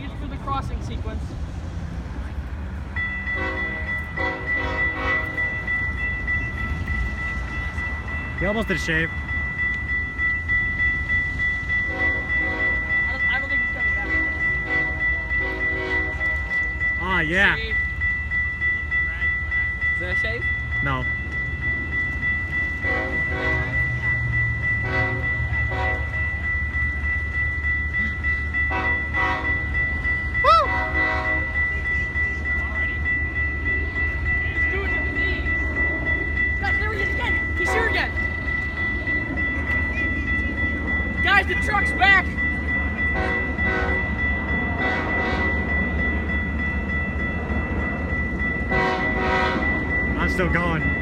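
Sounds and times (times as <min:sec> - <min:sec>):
high steady tone: 0:00.0 - 0:51.0
train rumbling past: 0:00.0 - 0:51.0
locomotive horn blasts: 0:03.3 - 0:05.5, 0:11.9 - 0:12.9, 0:14.0 - 0:16.5, 0:22.8 - 0:23.8, 0:24.8 - 0:26.1, 0:28.7 - 0:29.6, 0:30.6 - 0:31.6, 0:43.2 - 0:44.0, 0:44.8 - 0:45.6, 0:48.7 - 0:49.7.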